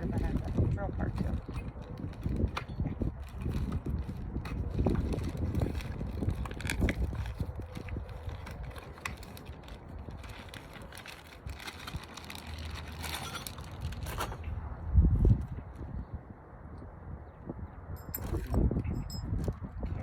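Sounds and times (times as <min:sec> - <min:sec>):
tools and parts rustling: 0:01.1 - 0:14.5, 0:18.0 - 0:19.6.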